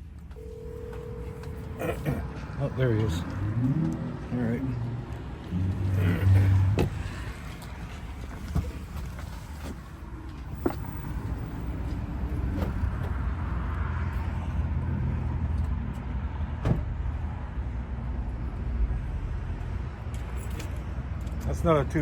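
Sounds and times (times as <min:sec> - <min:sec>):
vehicle engine rumbling: 0:00.1 - 0:17.3.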